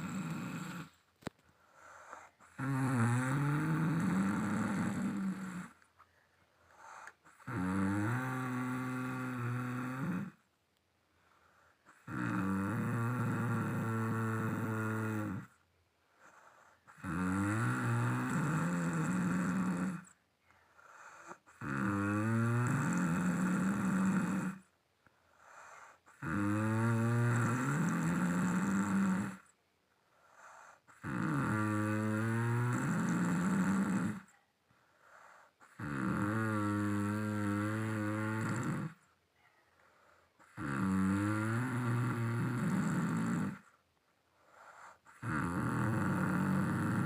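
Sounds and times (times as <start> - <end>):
droning snores: 0.0 - 1.0, 1.7 - 5.9, 6.7 - 10.5, 11.5 - 15.6, 16.2 - 24.7, 25.3 - 34.3, 34.9 - 39.1, 40.1 - 43.8, 44.4 - 47.0
quiet breaths: 0.0 - 47.0.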